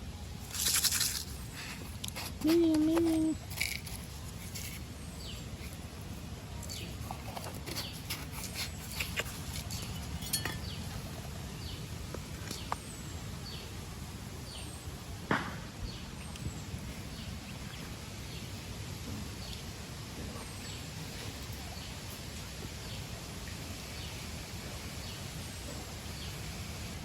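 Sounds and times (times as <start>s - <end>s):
small birds chirping: 0.3s - 13.8s.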